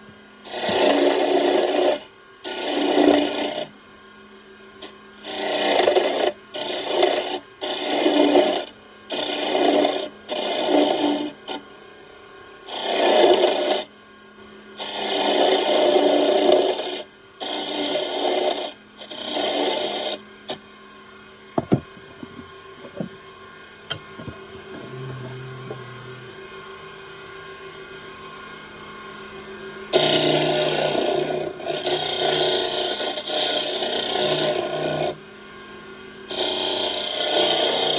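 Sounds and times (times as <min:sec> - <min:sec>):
lathe tool cutting spinning wood: 0:00.4 - 0:03.7, 0:04.8 - 0:11.6, 0:12.7 - 0:13.9, 0:14.8 - 0:20.6, 0:29.9 - 0:35.2, 0:36.3 - 0:37.9.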